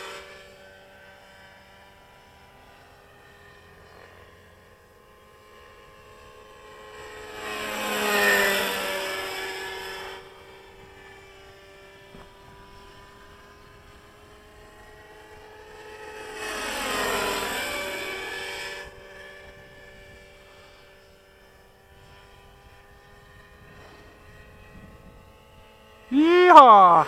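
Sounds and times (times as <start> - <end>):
model helicopter engine whine: 0.0 - 27.0.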